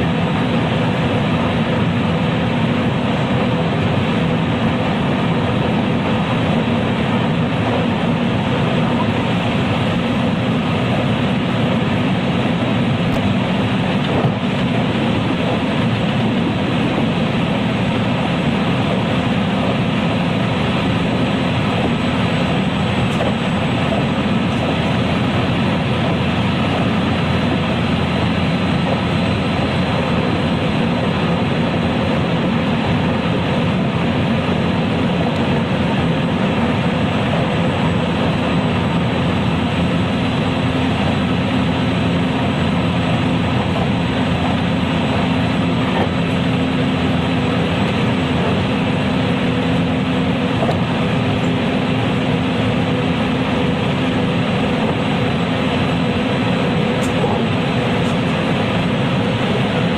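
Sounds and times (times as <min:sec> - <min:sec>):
train wheels rumbling on rail: 0:00.0 - 0:59.9.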